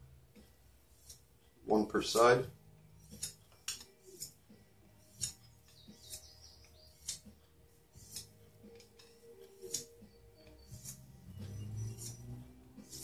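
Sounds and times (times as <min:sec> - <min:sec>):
knife scraping on sharpening stone: 0:00.9 - 0:01.3, 0:03.0 - 0:04.4, 0:05.0 - 0:13.0.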